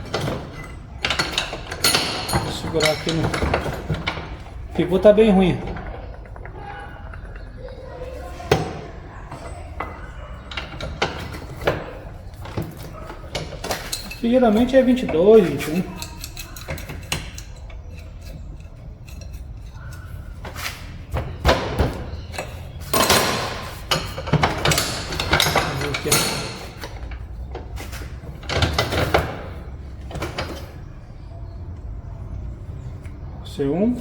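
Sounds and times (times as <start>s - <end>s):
tools clinking on steel parts: 0.1s - 7.8s, 9.6s - 20.4s, 22.2s - 27.5s.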